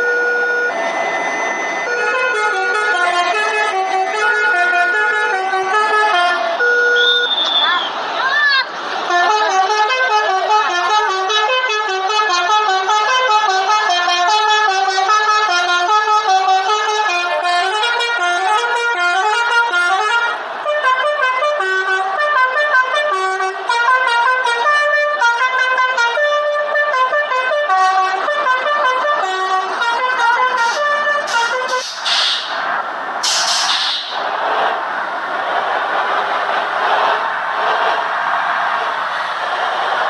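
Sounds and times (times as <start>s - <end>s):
musical air horn tune: 1.9s - 7.4s, 9.1s - 32.0s.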